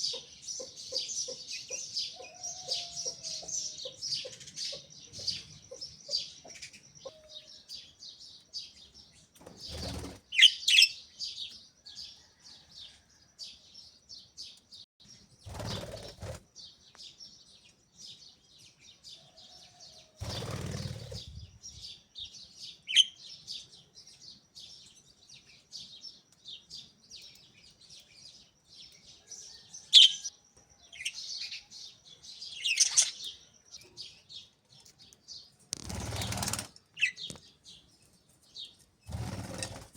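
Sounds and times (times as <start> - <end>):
wing flapping: 9.4 - 10.3, 15.5 - 16.4, 20.2 - 21.6, 35.8 - 36.8, 39.1 - 39.9.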